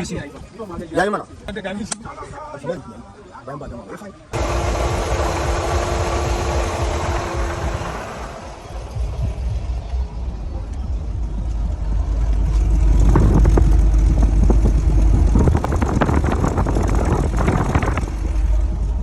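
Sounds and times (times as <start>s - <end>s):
car engine rumbling: 4.4s - 19.0s.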